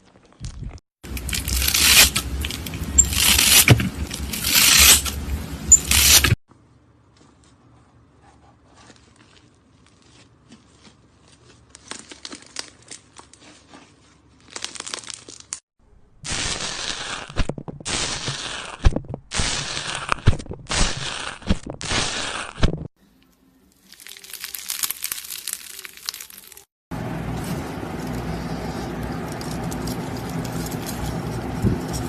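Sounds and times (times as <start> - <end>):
slime squeezed crunching: 23.9 - 26.6.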